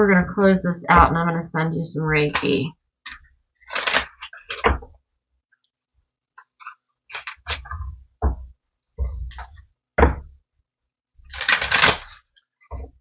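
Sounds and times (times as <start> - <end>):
cards shuffling: 3.1 - 4.6, 6.6 - 7.7, 11.3 - 12.2
cards rustling and knocking: 3.1 - 4.9, 6.4 - 10.4, 11.2 - 13.0.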